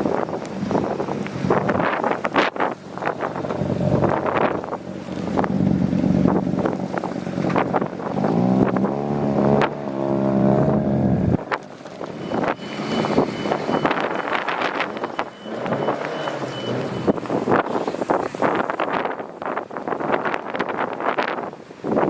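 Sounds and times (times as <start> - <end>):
passing car engines: 0.0 - 21.4
wind buffeting microphone: 0.0 - 22.0
car engine revving: 0.1 - 19.1
vehicle reversing beeper: 11.7 - 18.8.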